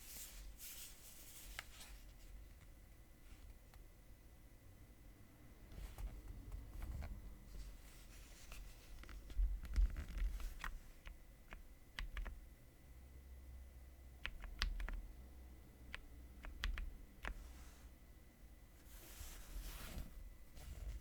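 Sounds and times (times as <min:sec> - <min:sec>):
mechanical keyboard keystrokes: 0:11.5 - 0:12.4, 0:14.2 - 0:15.0, 0:15.9 - 0:17.4.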